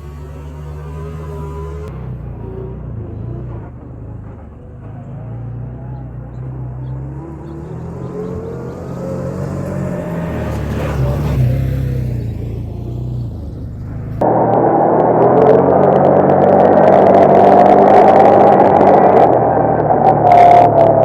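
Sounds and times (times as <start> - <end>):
engine revving up: 0.0 - 21.0.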